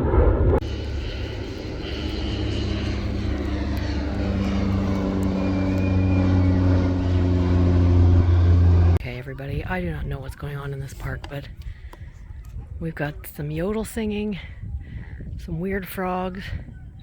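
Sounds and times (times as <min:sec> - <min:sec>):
airliner engine hum: 0:00.0 - 0:11.7.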